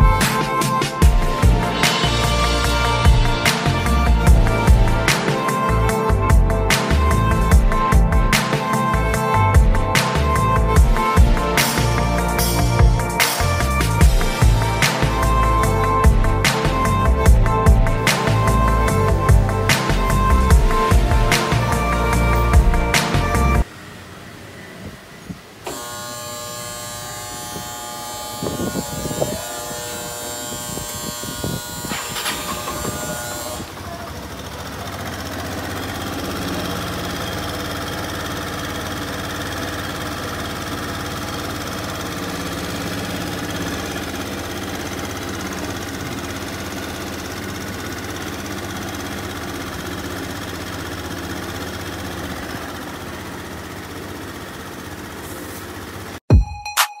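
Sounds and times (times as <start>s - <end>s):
scooter engine droning: 0.0s - 56.2s.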